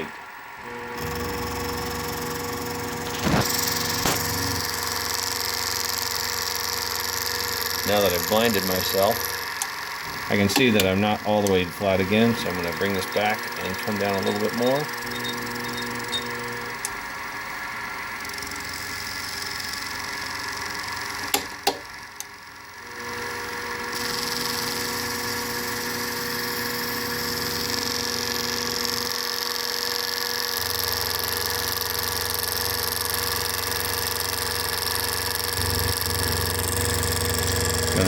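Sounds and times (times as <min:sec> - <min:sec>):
mill whining: 0:00.0 - 0:38.0
mini mill motor humming: 0:00.0 - 0:38.0
sharp clicks: 0:10.4 - 0:11.6.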